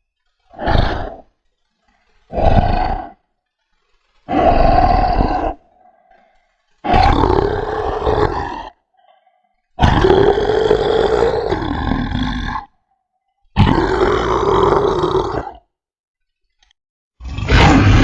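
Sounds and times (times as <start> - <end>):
loud angry roars: 0.5 - 1.3, 2.3 - 3.2, 4.3 - 8.8, 9.8 - 12.8, 13.6 - 15.7, 17.2 - 18.0.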